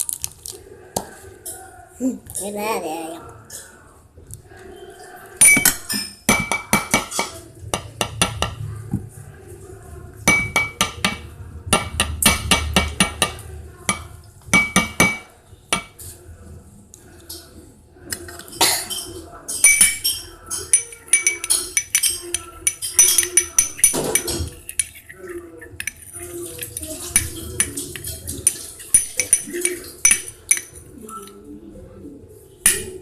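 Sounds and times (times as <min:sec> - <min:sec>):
spoon clinking against a bowl: 0:05.4 - 0:08.6, 0:10.3 - 0:16.0, 0:18.4 - 0:31.4, 0:32.7 - 0:33.0.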